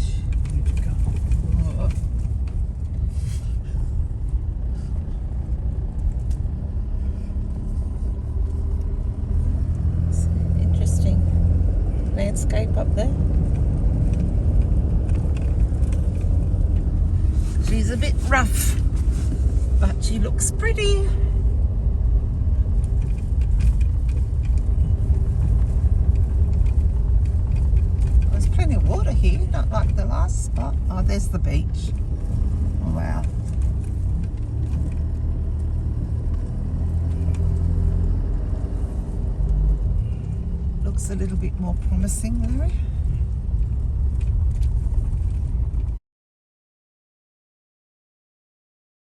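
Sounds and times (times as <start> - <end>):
car driving rumble: 0.0 - 46.0
light rattles and knocks: 0.2 - 5.3.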